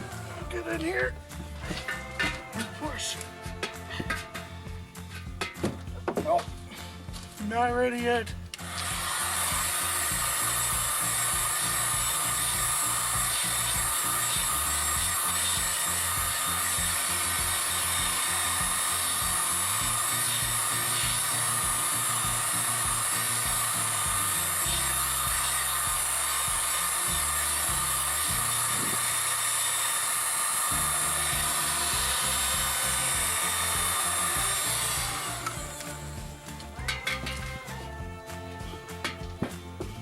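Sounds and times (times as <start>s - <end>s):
background music with bass: 0.0s - 29.6s, 30.6s - 40.0s
heat gun fan hissing: 8.6s - 37.7s.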